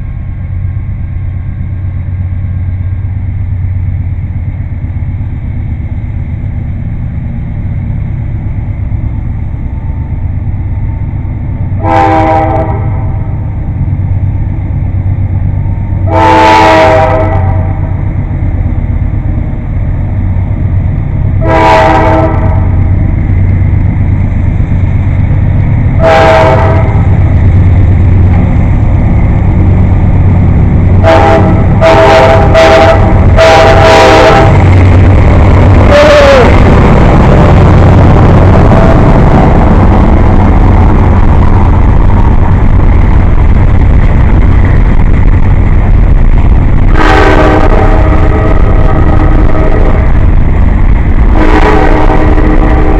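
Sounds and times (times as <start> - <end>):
diesel locomotive rumble: 0.0 - 52.9
locomotive horn blasts: 11.8 - 13.4, 16.0 - 17.8, 21.4 - 22.9, 26.0 - 27.1, 31.0 - 34.6, 46.9 - 50.1, 51.3 - 52.9.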